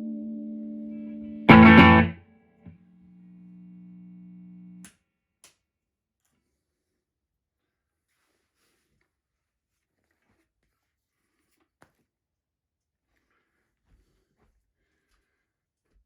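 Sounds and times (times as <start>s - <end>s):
overdriven electric guitar: 0.0s - 2.2s.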